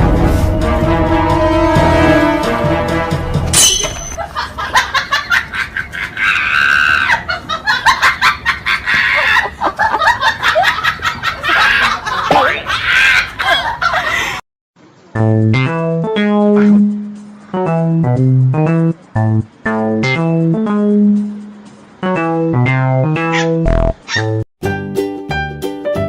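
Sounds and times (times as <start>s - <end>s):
music: 0.0s - 3.6s, 15.1s - 26.0s
plucked guitar music: 15.2s - 23.9s.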